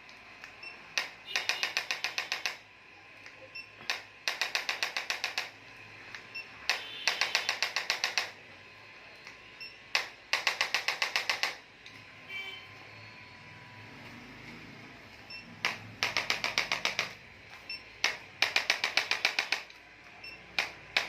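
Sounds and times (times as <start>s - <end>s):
adjusting gun rapid sharp pulses: 0.9s - 2.6s, 3.8s - 5.6s, 6.6s - 8.4s, 9.9s - 11.6s, 15.6s - 17.2s, 18.0s - 19.8s.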